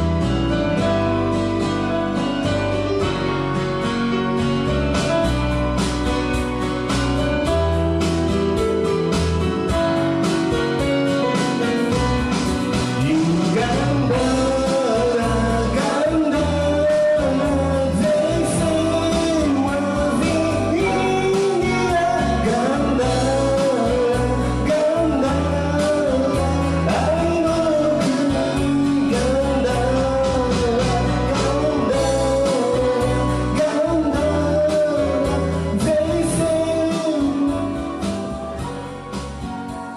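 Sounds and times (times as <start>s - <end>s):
pop-rock song with singing: 0.0s - 39.9s.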